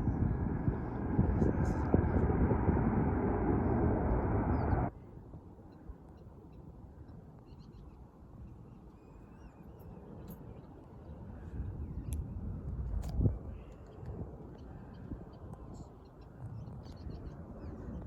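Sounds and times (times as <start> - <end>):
jet airliner rushing: 0.0 - 4.9.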